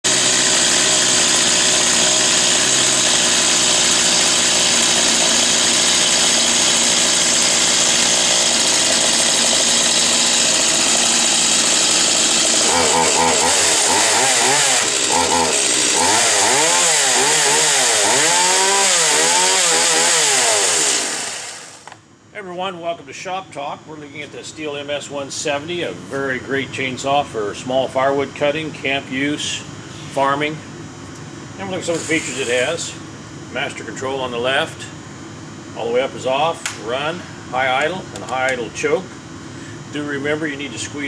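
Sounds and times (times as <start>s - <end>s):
chainsaw running at high speed: 0.0s - 22.0s, 31.9s - 32.8s.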